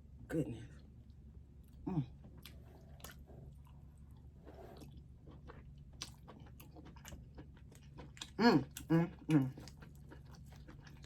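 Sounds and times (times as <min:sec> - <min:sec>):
person chewing: 0:02.4 - 0:11.0.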